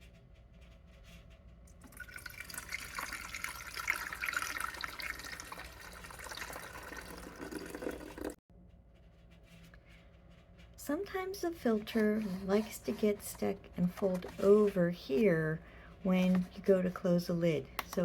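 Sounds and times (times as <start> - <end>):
water pouring into coffee maker: 1.8 - 8.4.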